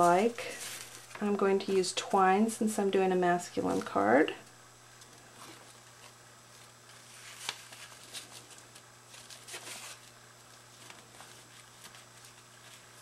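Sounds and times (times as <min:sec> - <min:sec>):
twine and cardstock rustling: 0:00.0 - 0:01.8, 0:05.0 - 0:13.0.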